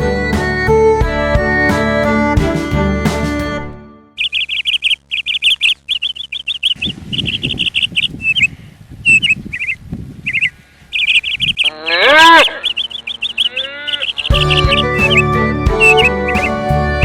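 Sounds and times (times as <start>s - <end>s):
small birds chirping: 4.2s - 16.6s.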